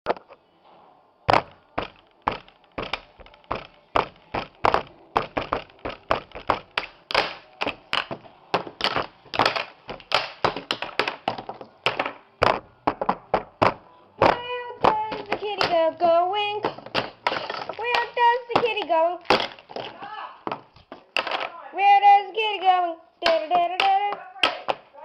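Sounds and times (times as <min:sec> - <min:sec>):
sharp hard knocks and taps: 0:01.3 - 0:15.8.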